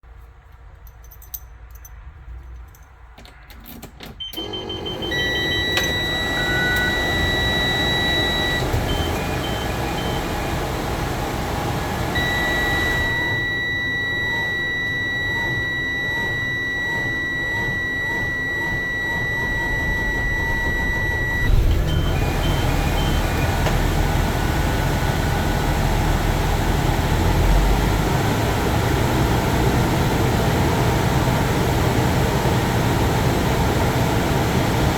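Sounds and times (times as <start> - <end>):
diesel engine cranking and idling: 4.2 - 34.9
dashboard warning buzzer: 4.4 - 33.1
chimes beeping: 19.8 - 26.2.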